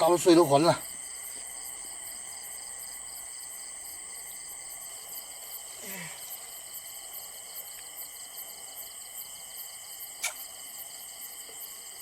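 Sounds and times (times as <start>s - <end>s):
insects chirring: 0.0s - 12.0s
sharp click: 10.2s - 10.4s.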